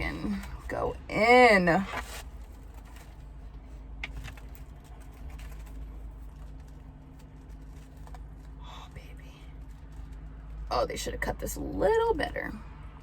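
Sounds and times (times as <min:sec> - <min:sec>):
low steady hum: 0:00.0 - 0:13.0
faint chewing: 0:02.3 - 0:10.7.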